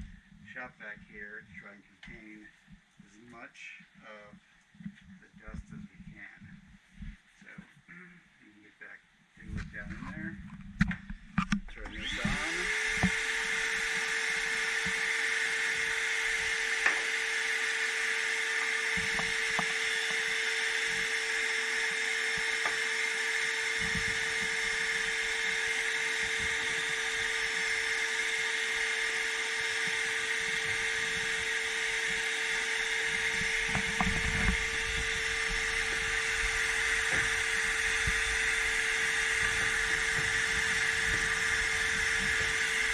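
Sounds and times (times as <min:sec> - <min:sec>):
shop vac motor whining: 0:09.4 - 0:42.9.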